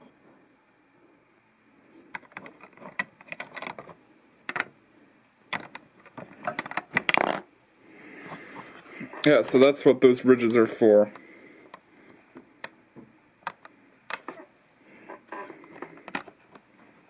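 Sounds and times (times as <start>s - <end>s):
plastic bricks clicking and clattering: 2.1s - 4.7s, 5.5s - 7.5s.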